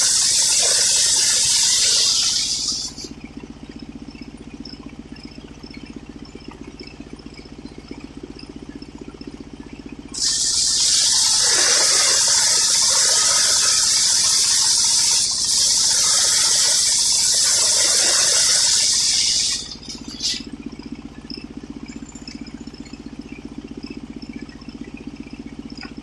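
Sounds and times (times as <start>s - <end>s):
circular saw blade cutting log: 0.0s - 3.1s, 10.2s - 20.5s
saw engine idling: 0.0s - 26.0s.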